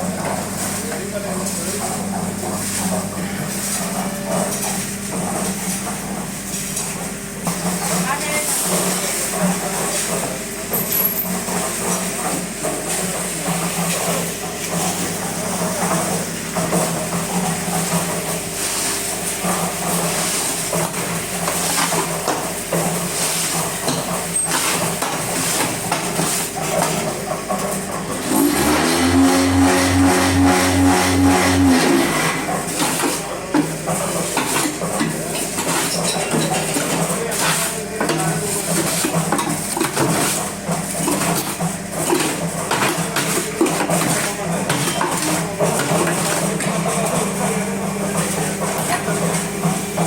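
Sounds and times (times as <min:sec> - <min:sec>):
machinery humming: 0:26.6 - 0:35.7
loud pulsing hum: 0:28.5 - 0:32.6.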